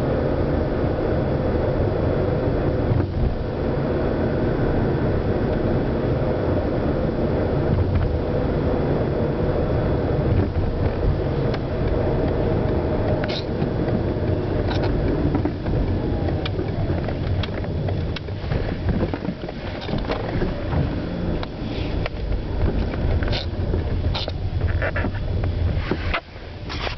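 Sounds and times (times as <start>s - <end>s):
car engine rumbling: 0.0s - 26.9s.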